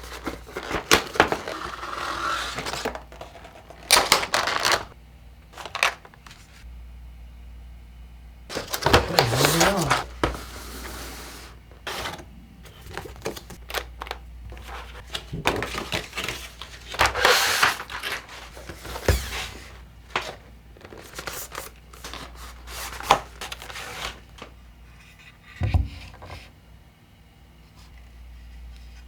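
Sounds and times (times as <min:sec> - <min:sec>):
packaging rustling: 0:00.0 - 0:05.0, 0:05.6 - 0:06.6, 0:08.5 - 0:24.5.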